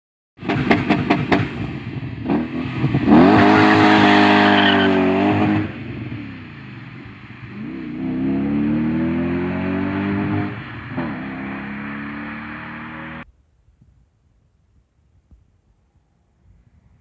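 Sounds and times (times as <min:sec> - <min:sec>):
car engine revving: 0:00.4 - 0:13.2.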